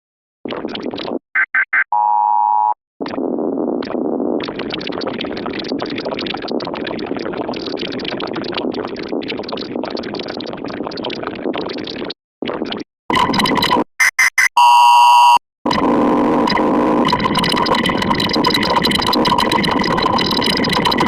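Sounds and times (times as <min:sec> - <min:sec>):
harsh distorted noise: 0:03.0 - 0:11.6, 0:13.1 - 0:14.6, 0:15.7 - 0:21.0.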